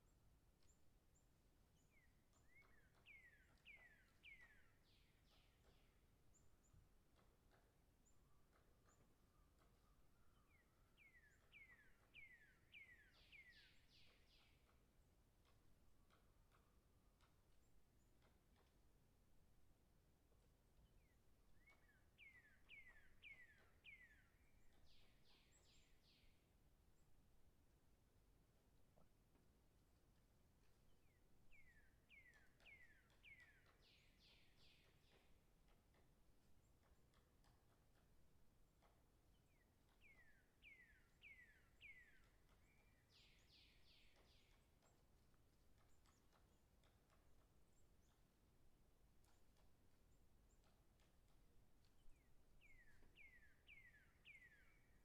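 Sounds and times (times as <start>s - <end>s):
woodpecker tapping on wood: 0.5s - 55.0s.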